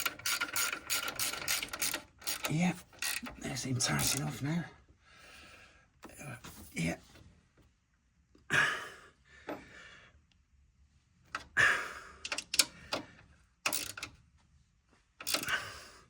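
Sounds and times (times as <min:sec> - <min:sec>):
tools clicking and knocking: 0:00.0 - 0:04.4, 0:12.2 - 0:14.2, 0:15.2 - 0:15.6.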